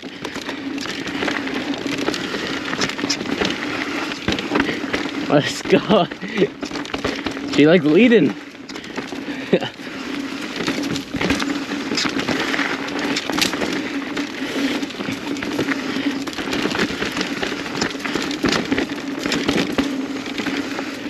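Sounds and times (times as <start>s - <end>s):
bike rattling: 0.0s - 21.0s
tyres crackling over gravel: 0.0s - 21.0s.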